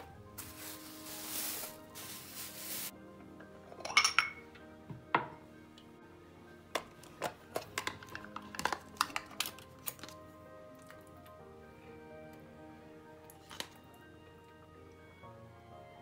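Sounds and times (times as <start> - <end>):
soft background music: 0.0 - 16.0
dishes and cutlery clinking: 3.7 - 4.5, 6.8 - 10.1.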